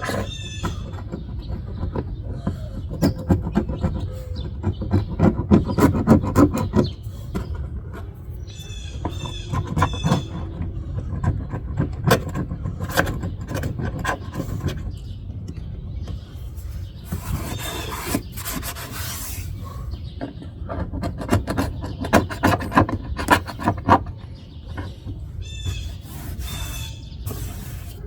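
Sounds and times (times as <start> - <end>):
high squeak: 0.0 - 6.0, 8.2 - 14.8, 16.5 - 19.6, 24.8 - 28.0
metal scraper scraping car body: 0.0 - 28.0.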